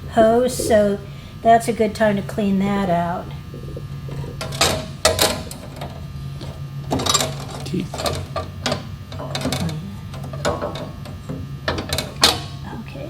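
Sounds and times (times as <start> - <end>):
steady low hum: 0.0 - 13.0
hands clattering parts in cabinet: 4.1 - 12.6.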